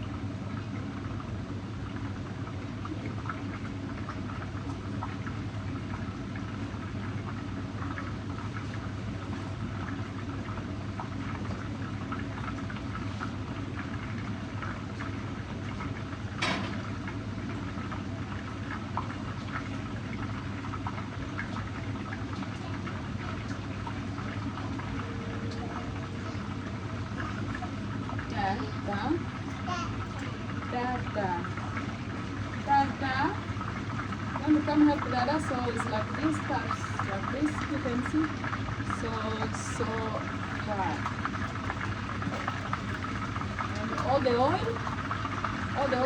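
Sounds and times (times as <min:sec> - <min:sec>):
fish sizzling in hot oil: 0:30.4 - 0:46.0.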